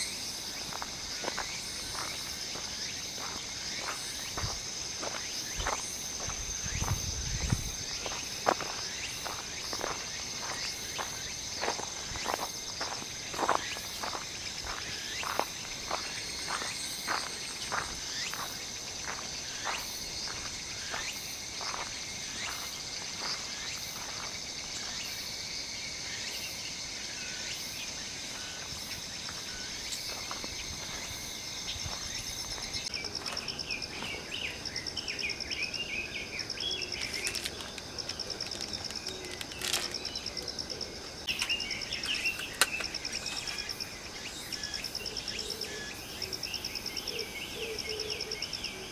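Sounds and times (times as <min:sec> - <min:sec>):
insects chirping: 0:00.0 - 0:48.9
pulsing cricket trill: 0:00.0 - 0:48.9
footsteps: 0:00.7 - 0:24.4, 0:29.3 - 0:34.3, 0:37.0 - 0:40.1.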